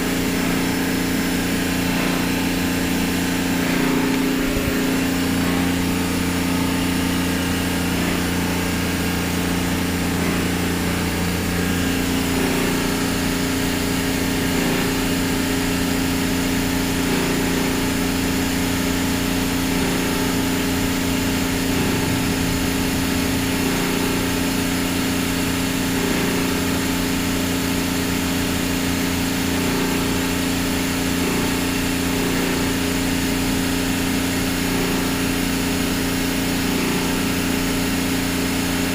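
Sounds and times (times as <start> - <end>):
watermaker machine hum: 0.0 - 38.9.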